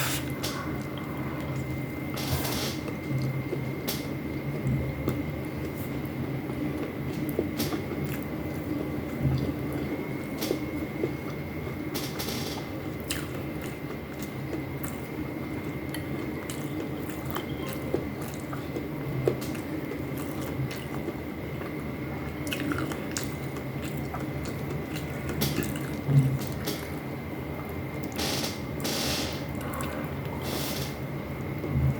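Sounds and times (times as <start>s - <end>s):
wet chewing and mouth sounds: 2.8s - 11.8s, 12.8s - 27.0s, 29.5s - 30.4s.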